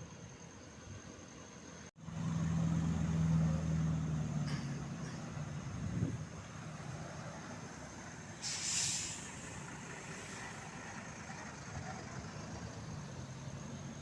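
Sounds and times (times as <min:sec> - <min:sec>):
bus engine running: 0:00.1 - 0:14.0
air brakes hissing: 0:04.4 - 0:06.3, 0:06.9 - 0:13.0.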